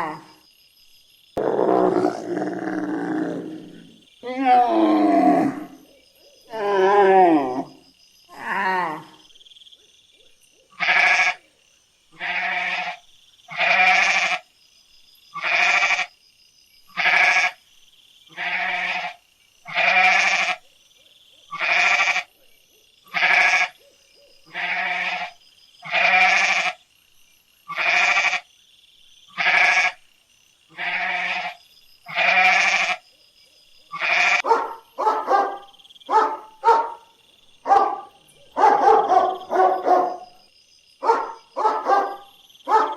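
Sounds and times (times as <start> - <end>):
farm animal bleating: 10.8 - 11.4, 12.2 - 14.4, 15.4 - 16.1, 16.9 - 17.6, 18.3 - 20.6, 21.5 - 22.3, 23.1 - 23.7, 24.5 - 26.8, 27.7 - 28.4, 29.3 - 30.0, 30.7 - 33.0, 33.9 - 34.4.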